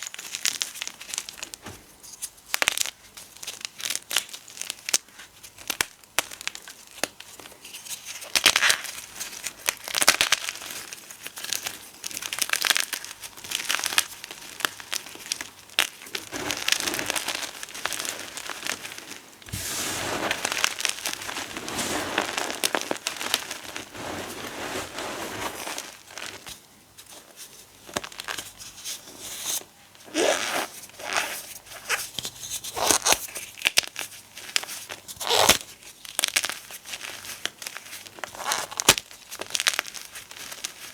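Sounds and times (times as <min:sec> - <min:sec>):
chalk and flour crunching: 0:15.0 - 0:26.5.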